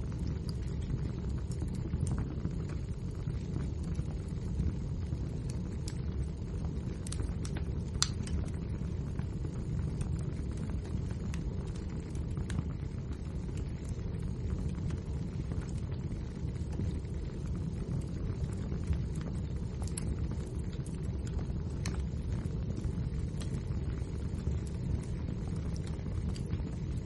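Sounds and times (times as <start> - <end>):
fire crackles and pops: 0.0 - 27.0
low rumble of flames: 0.0 - 27.0.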